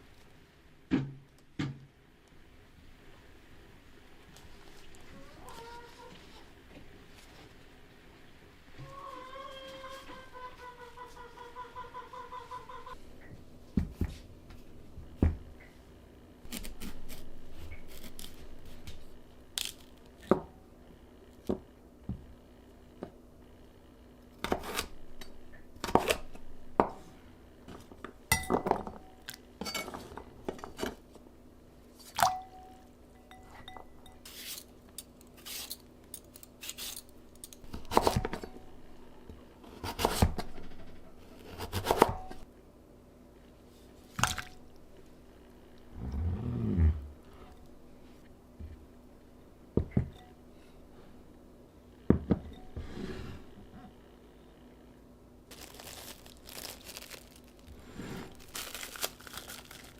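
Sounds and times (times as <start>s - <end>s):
faint steady hum: 0.0s - 59.9s
utensils clinking against dishes: 28.3s - 30.1s.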